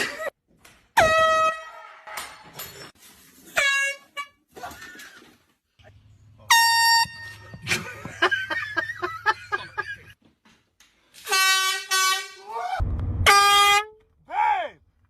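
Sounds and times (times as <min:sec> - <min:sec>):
air horn blasts: 0:06.4 - 0:07.7, 0:11.2 - 0:12.5, 0:13.2 - 0:14.0.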